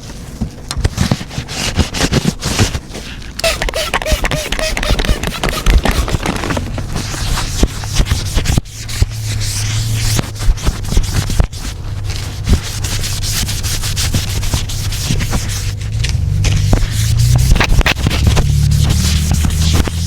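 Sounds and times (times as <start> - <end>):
scrubbing on a surface: 1.1 - 20.0.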